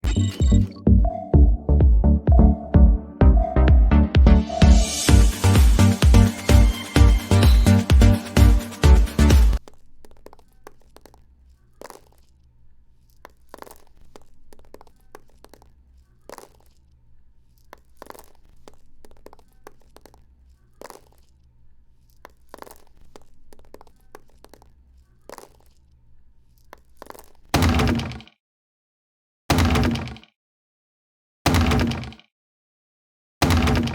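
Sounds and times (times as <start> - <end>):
small stones clattering: 9.6 - 21.4, 22.0 - 25.8.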